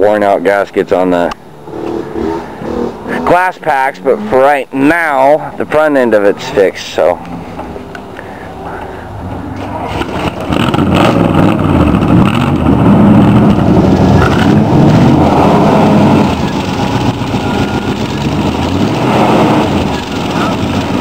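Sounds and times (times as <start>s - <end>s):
car engine revving: 1.6s - 5.1s, 9.2s - 21.0s.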